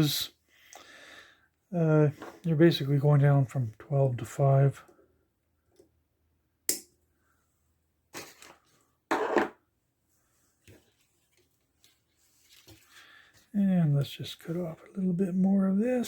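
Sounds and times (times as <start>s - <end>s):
rustling scrapes: 10.6s - 13.5s.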